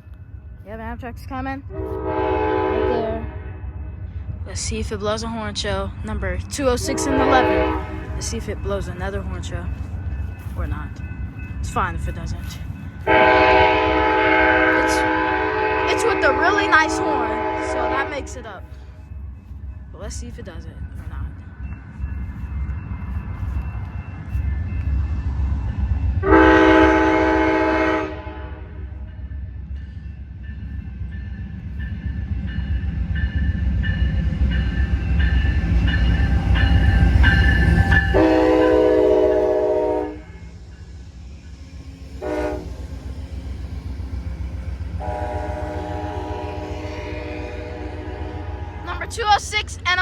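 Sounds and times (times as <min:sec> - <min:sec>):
diesel locomotive rumble: 0:00.0 - 0:50.0
train air horn: 0:01.7 - 0:03.6, 0:06.8 - 0:08.2, 0:13.1 - 0:18.4, 0:26.2 - 0:28.9, 0:38.0 - 0:40.4, 0:42.2 - 0:42.8, 0:45.0 - 0:49.1.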